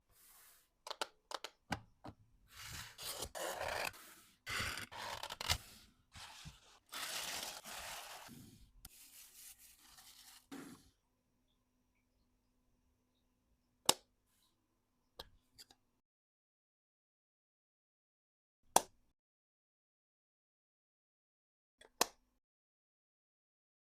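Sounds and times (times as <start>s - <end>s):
packaging rustling and scraping: 2.6s - 8.3s.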